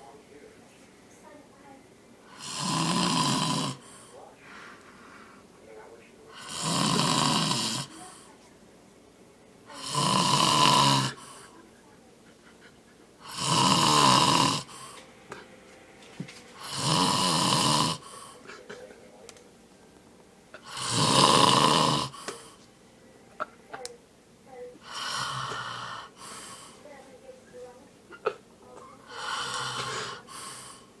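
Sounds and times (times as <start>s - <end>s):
man snoring: 2.3s - 3.9s, 6.3s - 8.0s, 9.7s - 11.5s, 13.2s - 15.0s, 16.6s - 18.4s, 20.6s - 22.4s, 24.8s - 26.6s, 29.0s - 31.0s.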